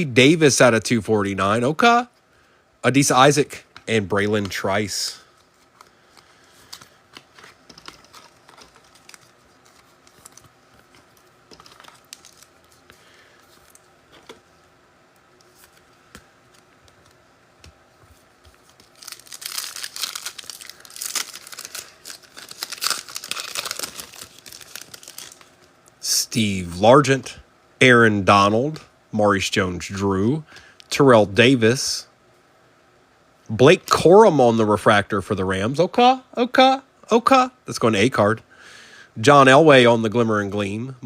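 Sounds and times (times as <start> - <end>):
trading cards clicking and rustling: 3.7 - 14.5, 15.4 - 25.5
foil wrapper tearing and crinkling: 5.8 - 12.9, 18.6 - 25.7.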